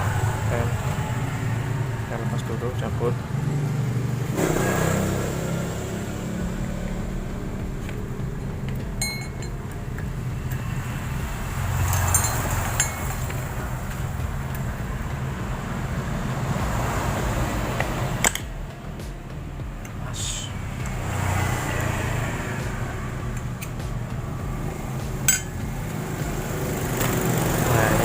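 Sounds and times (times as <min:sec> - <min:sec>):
low vehicle rumble: 0:00.0 - 0:28.0
metal parts clinking: 0:11.9 - 0:13.2.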